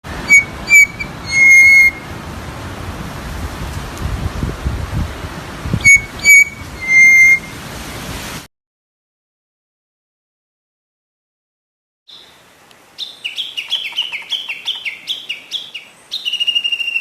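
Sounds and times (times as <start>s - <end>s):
steady background hiss: 0.1s - 8.5s, 12.1s - 17.0s
bird whistling song: 0.2s - 2.1s, 5.8s - 7.6s, 12.1s - 12.3s, 13.0s - 17.0s.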